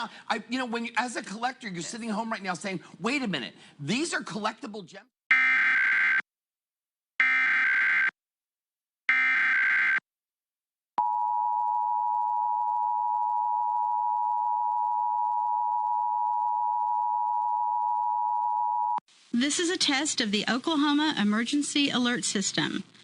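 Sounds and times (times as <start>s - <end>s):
dual-tone alarm: 5.3s - 6.2s, 7.2s - 8.2s, 9.1s - 10.0s, 11.0s - 19.0s.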